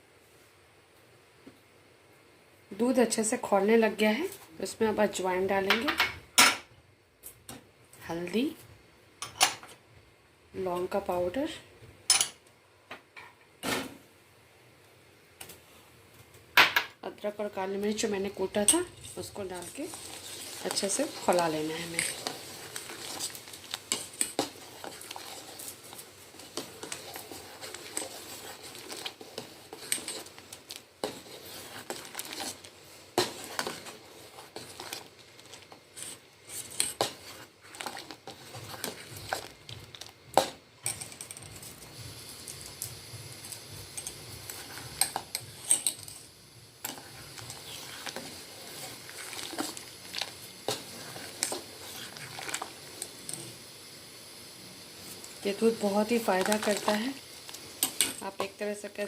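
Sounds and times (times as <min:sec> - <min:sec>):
milk boiling: 0:14.2 - 0:59.0
spoon scraping a pot: 0:18.5 - 0:41.6, 0:44.0 - 0:53.5.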